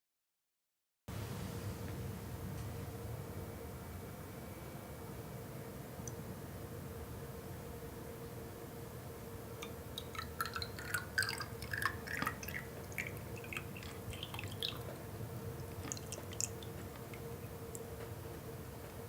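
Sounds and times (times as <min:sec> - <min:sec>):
faint steady hum: 0:01.1 - 0:19.0
water dripping and plinking: 0:09.6 - 0:15.0, 0:15.6 - 0:17.8.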